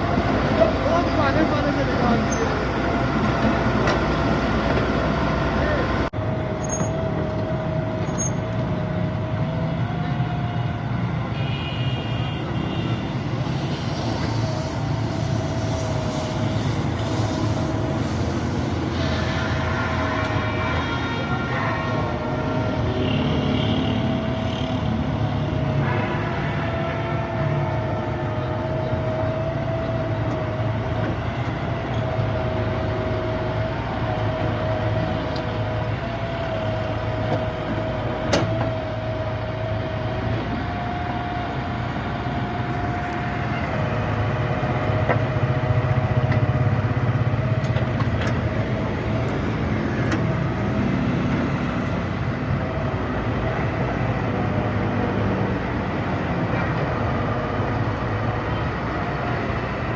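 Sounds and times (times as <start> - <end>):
excavator diesel engine running: 0.0 - 11.3, 13.2 - 59.9.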